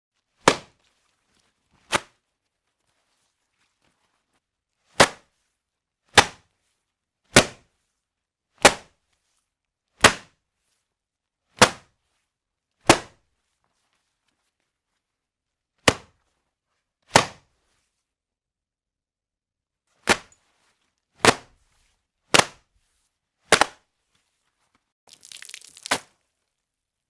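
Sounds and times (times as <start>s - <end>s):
wet cloth slapping down: 25.1s - 26.2s.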